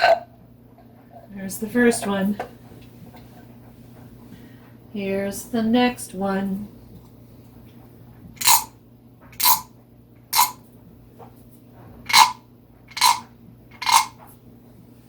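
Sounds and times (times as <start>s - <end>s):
wooden frog rasp scraped: 10.4s - 10.6s, 12.1s - 14.1s.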